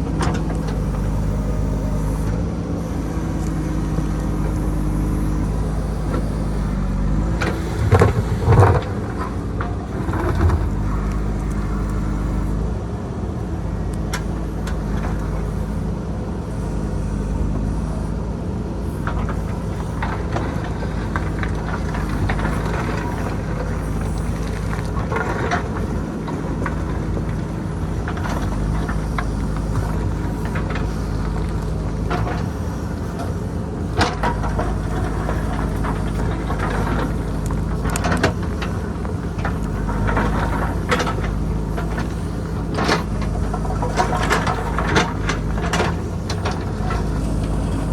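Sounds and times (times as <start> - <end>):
diesel engine running: 0.0 - 47.9
rocks and stones clattering: 7.5 - 11.0, 19.1 - 47.9.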